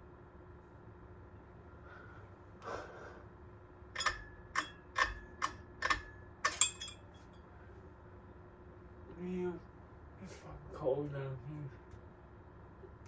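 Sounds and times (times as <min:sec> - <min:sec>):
ceiling fan motor humming: 0:00.0 - 0:13.0
sharp ringing clinks: 0:04.0 - 0:05.2, 0:05.8 - 0:07.2.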